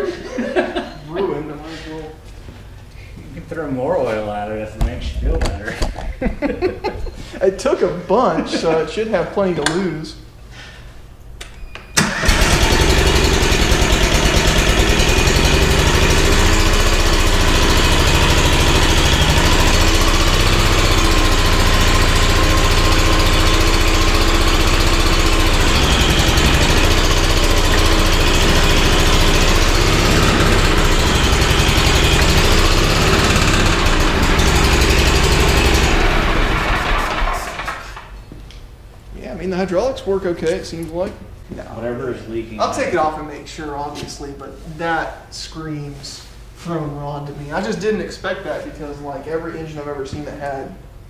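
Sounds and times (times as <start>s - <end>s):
stump grinder engine running: 12.0s - 37.8s.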